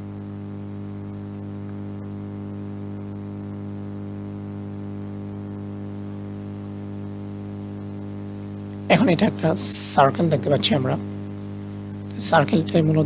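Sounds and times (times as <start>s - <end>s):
low electrical hum: 0.0s - 13.0s
faint hiss: 7.5s - 13.0s.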